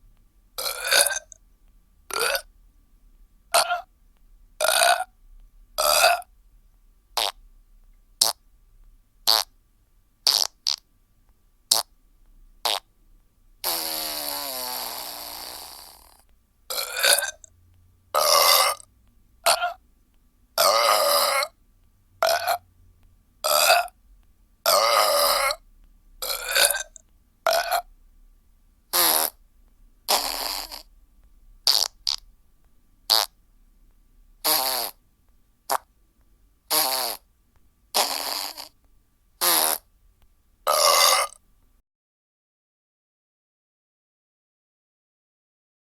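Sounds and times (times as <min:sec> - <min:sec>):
burp sound effects: 0:00.6 - 0:01.4, 0:02.1 - 0:02.5, 0:03.5 - 0:03.9, 0:04.6 - 0:05.1, 0:05.8 - 0:06.3, 0:07.2 - 0:07.4, 0:08.2 - 0:08.4, 0:09.3 - 0:09.5, 0:10.3 - 0:10.8, 0:11.7 - 0:11.9, 0:12.6 - 0:12.9, 0:13.6 - 0:17.5, 0:18.2 - 0:19.8, 0:20.6 - 0:21.6, 0:22.2 - 0:22.6, 0:23.4 - 0:24.0, 0:24.7 - 0:25.6, 0:26.2 - 0:27.9, 0:28.9 - 0:29.4, 0:30.1 - 0:30.9, 0:31.7 - 0:32.2, 0:33.1 - 0:33.4, 0:34.4 - 0:35.0, 0:36.7 - 0:37.2, 0:38.0 - 0:38.8, 0:39.4 - 0:39.9, 0:40.7 - 0:41.4.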